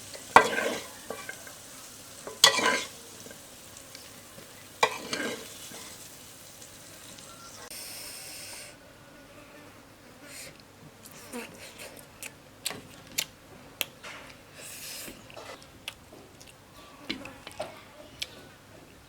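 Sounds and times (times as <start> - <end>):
spatula scraping a pan: 0.0 - 6.1
stir fry sizzling in a pan: 0.0 - 8.7.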